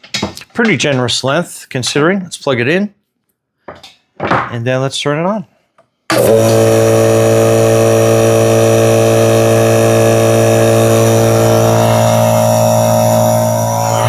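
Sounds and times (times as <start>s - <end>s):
air compressor droning: 6.1s - 14.0s.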